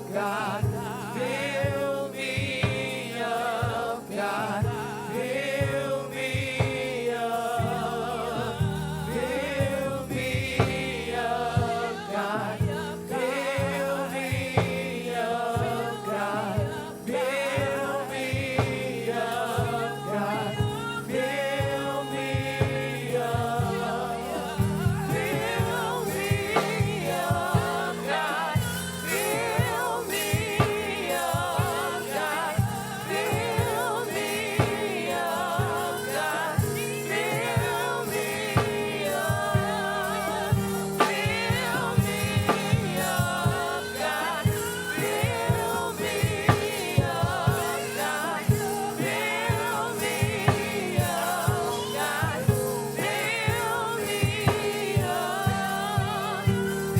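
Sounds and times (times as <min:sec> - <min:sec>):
choir singing gospel: 0:00.0 - 0:56.9
band with bass and drums: 0:15.6 - 0:56.9.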